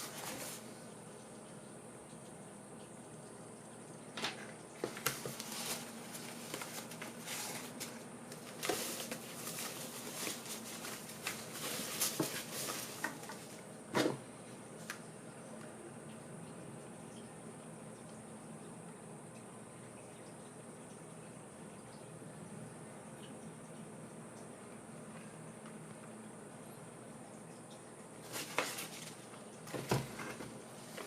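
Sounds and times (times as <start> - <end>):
packaging rustling: 0.0 - 0.7, 4.8 - 13.6, 28.2 - 31.0.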